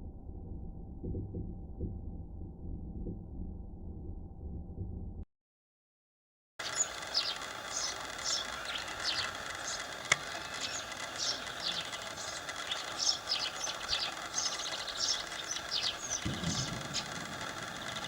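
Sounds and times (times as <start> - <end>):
sharp click: 7.2 - 18.0.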